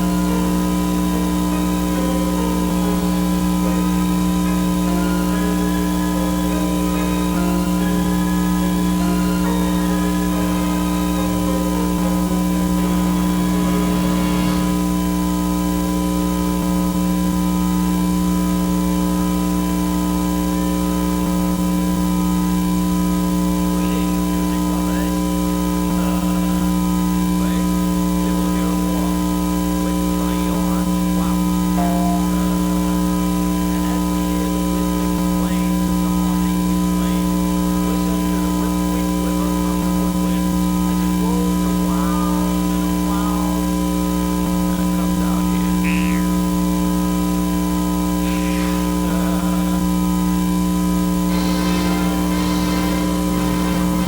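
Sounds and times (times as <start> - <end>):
faint muffled voices: 0.0 - 15.0, 23.4 - 47.3, 48.1 - 50.5
faint wavering sounds: 0.0 - 16.2, 51.3 - 54.0
loud electrical hum: 0.0 - 54.0.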